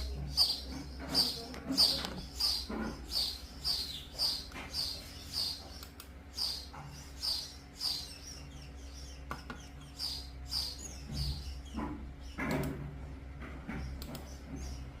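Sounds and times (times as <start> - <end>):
small bird chirping: 0.0 - 15.0
steady low hum: 0.0 - 15.0.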